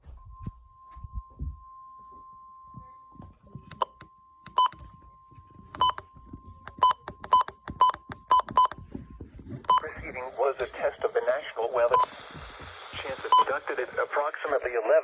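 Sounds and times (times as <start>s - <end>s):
faint steady alarm whine: 0.0s - 14.6s
short sharp electronic beeps: 13.2s - 13.6s.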